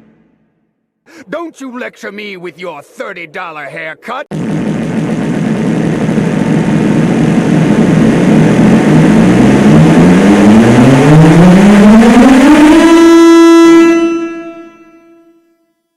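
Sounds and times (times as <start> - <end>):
race car engine accelerating: 7.2 - 13.8.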